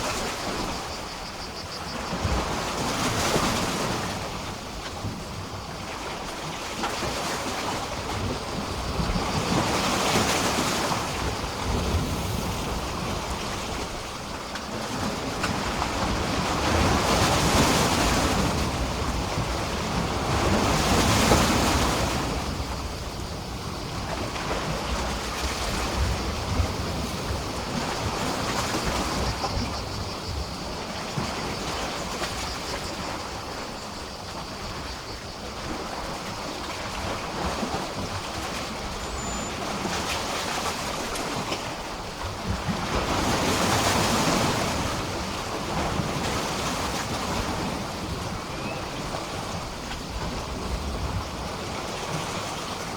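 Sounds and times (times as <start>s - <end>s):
waves splashing against a pier: 35.7s - 52.9s.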